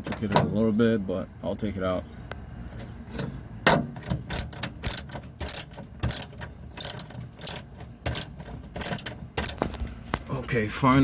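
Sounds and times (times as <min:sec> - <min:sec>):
metal hand tool clicking and scraping: 0:04.3 - 0:09.6.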